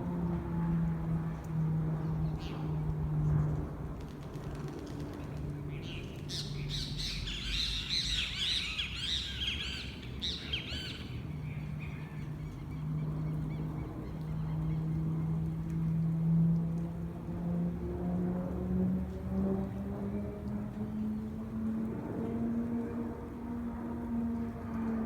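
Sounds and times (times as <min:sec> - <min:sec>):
birds chirping: 0:05.7 - 0:14.9.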